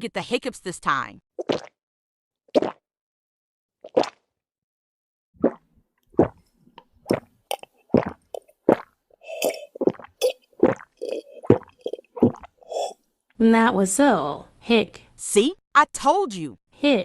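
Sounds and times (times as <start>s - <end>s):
person gulping a drink: 3.8s - 4.2s, 5.4s - 13.0s.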